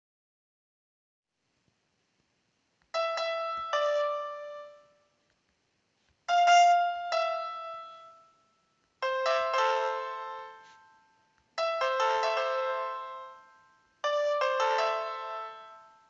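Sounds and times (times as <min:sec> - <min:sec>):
piano-like keyboard notes: 0:02.9 - 0:05.2, 0:06.3 - 0:16.0.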